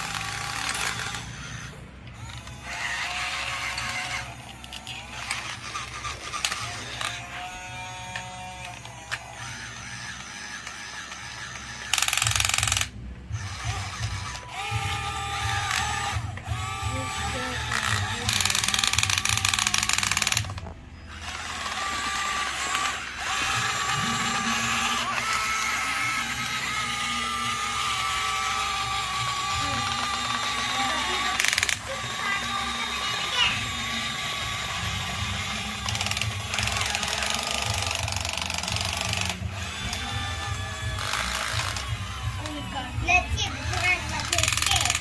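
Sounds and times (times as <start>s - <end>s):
small gear motors whining: 0.0s - 45.0s
sharp clicks: 8.1s - 14.8s, 17.6s - 25.6s, 31.2s - 32.3s, 35.7s - 40.2s.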